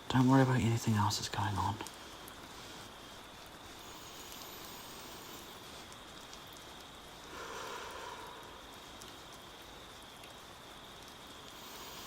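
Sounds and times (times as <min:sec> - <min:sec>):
soft rain: 0:00.0 - 0:12.0
slow breath: 0:07.2 - 0:09.3.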